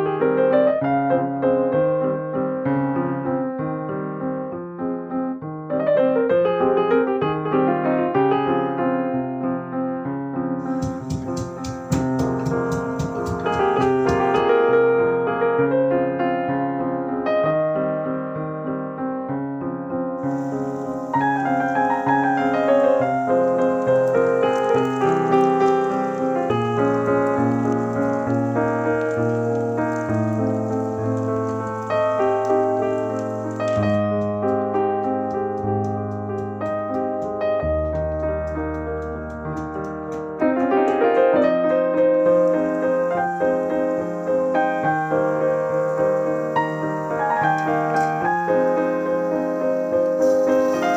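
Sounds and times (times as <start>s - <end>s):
instrumental keyboard music: 10.6s - 14.9s, 20.2s - 50.9s.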